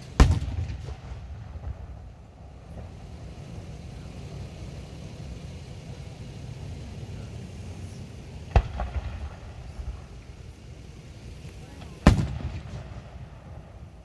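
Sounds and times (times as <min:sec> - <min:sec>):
firework shell burst: 0:00.0 - 0:07.0, 0:07.6 - 0:14.0
firework crackles: 0:00.0 - 0:14.0
fireworks rumble: 0:00.0 - 0:14.0.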